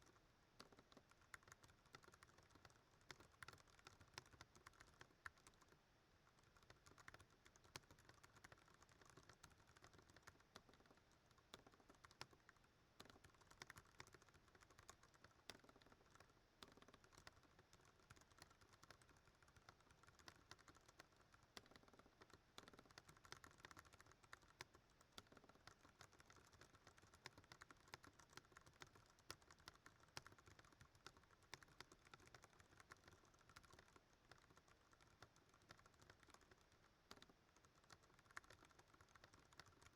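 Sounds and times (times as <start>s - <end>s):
mechanical keyboard typing: 0.1s - 5.8s, 6.4s - 39.9s.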